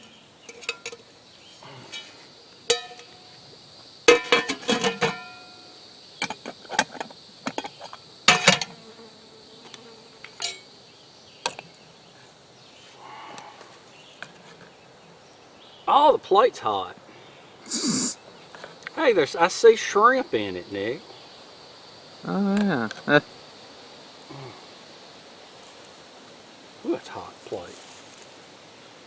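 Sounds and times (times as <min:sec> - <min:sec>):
high insect buzz: 0:00.0 - 0:29.0
utensil clanging on metal cookware: 0:00.5 - 0:01.0, 0:02.7 - 0:03.2, 0:04.1 - 0:05.5, 0:08.3 - 0:08.7.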